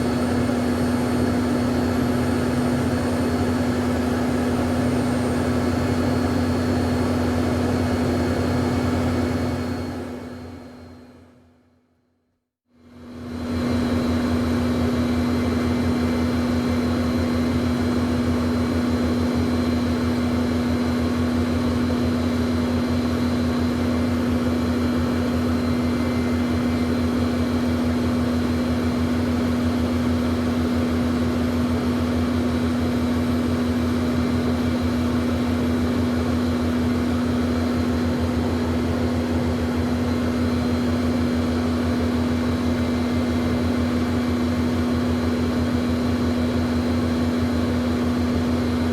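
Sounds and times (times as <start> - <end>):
jet aircraft drone: 0.0 - 11.1, 13.2 - 48.9.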